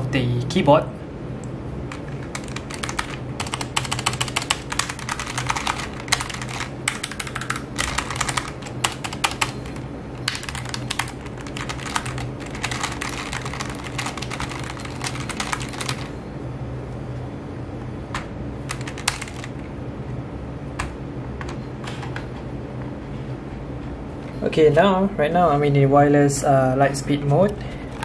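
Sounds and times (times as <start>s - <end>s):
mechanical keyboard typing: 1.9s - 16.2s, 18.7s - 19.6s.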